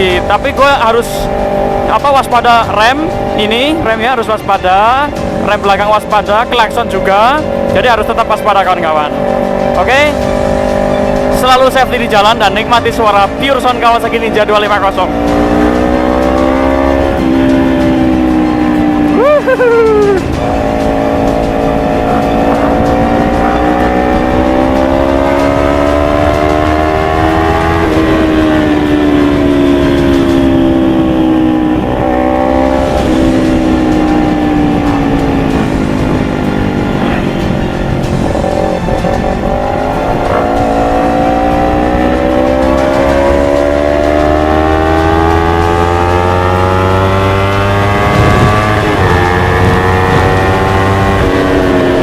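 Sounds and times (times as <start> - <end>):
motorcycle engine revving: 0.0 - 52.0.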